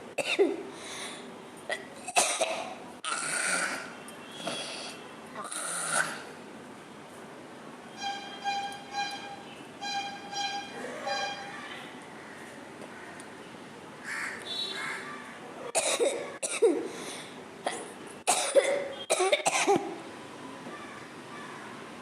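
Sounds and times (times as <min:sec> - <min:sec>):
soft throat sound: 0:01.7 - 0:06.4
person coughing: 0:15.8 - 0:16.9, 0:17.7 - 0:19.9.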